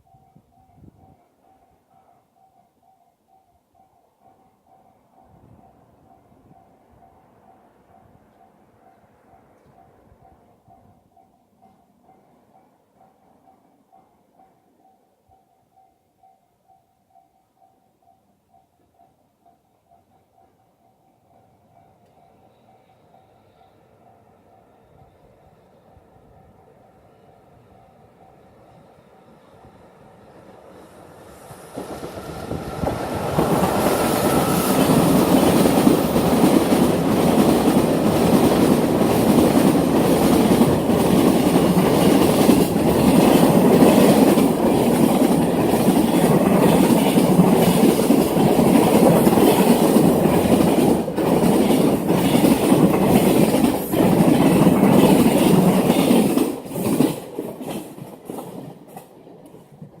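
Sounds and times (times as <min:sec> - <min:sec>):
freight train wheels clattering: 0:31.3 - 1:00.0.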